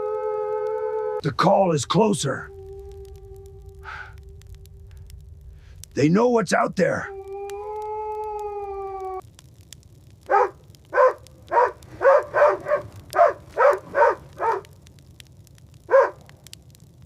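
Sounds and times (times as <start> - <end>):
blizzard wind rumble: 1.2 - 17.0
dogs barking: 10.3 - 14.7, 15.9 - 16.2.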